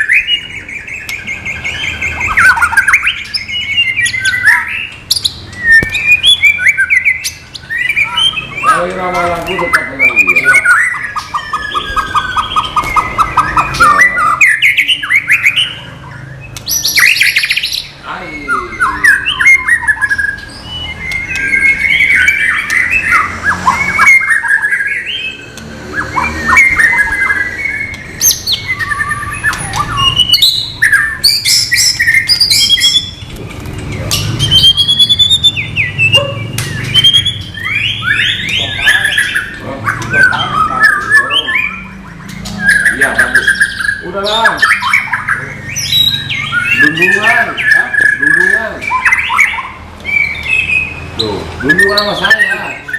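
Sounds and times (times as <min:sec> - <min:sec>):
bird singing whistled phrases: 0:00.0 - 0:33.3, 0:34.0 - 0:52.9.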